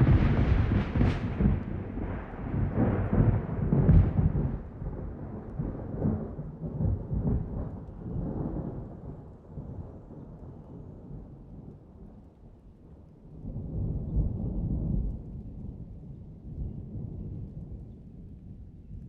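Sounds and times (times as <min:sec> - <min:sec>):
thunder rumbling: 0:00.0 - 0:11.8
rain: 0:00.0 - 0:19.0.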